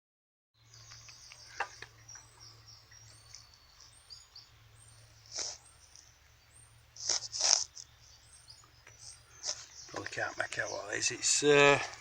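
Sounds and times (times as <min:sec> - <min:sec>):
birds chirping: 0:00.6 - 0:12.0
steady low hum: 0:00.6 - 0:12.0.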